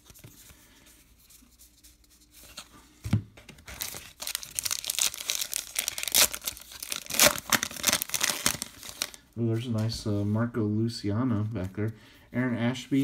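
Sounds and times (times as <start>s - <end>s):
wrapper tearing and crinkling: 3.7s - 9.2s.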